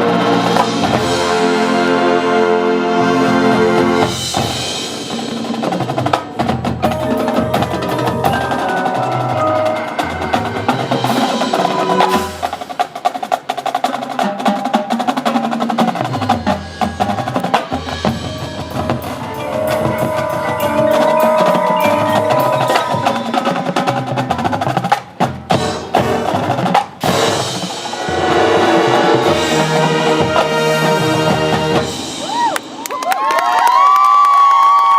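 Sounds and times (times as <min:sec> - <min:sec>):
marching band playing: 0:00.0 - 0:33.9.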